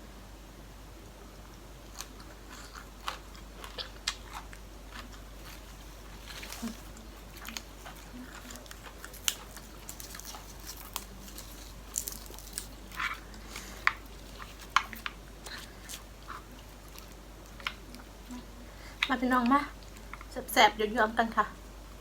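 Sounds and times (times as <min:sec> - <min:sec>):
person chewing crunchy food: 0:01.8 - 0:20.3.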